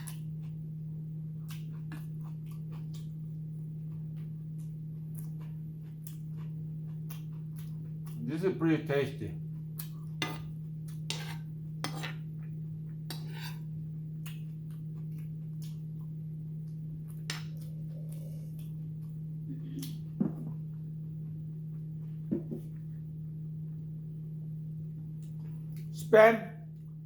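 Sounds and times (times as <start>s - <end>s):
low electrical hum: 0.0s - 27.0s
cutlery clinking against a bowl: 10.2s - 12.2s.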